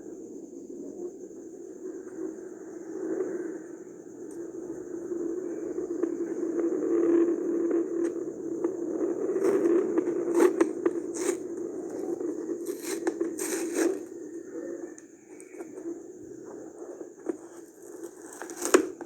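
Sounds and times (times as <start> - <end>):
steady low hum: 0.0 - 19.0
packaging scraping tearing and crinkling: 10.3 - 14.1, 17.5 - 19.0.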